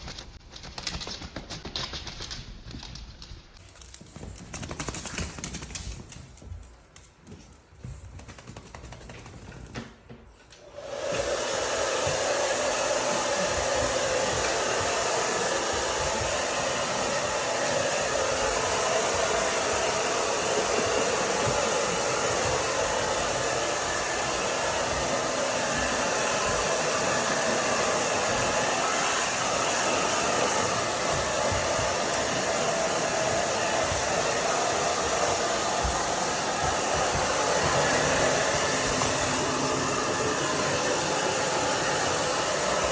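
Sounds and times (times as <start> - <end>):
hair dryer blowing: 10.6 - 42.9.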